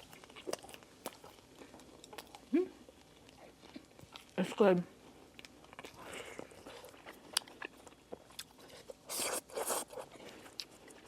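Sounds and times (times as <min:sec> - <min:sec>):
chewing and crunching food: 0:00.0 - 0:11.0.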